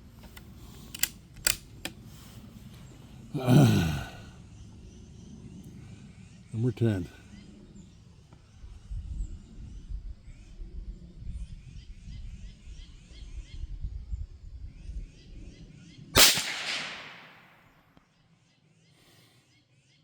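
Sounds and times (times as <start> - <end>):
birds chirping: 0.0 - 13.8
rifle shot: 16.2 - 17.8.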